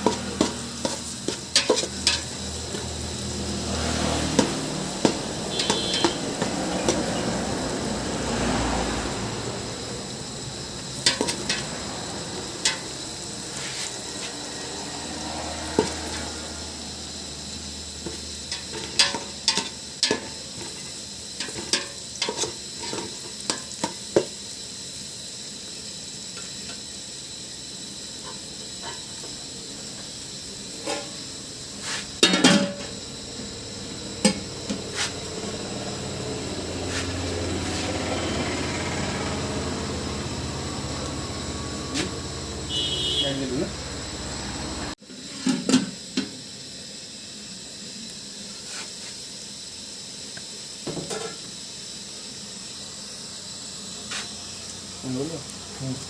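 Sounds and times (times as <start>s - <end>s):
utensil scraping and knocking pan: 0.0s - 3.1s
food sizzling in oil: 0.0s - 56.0s.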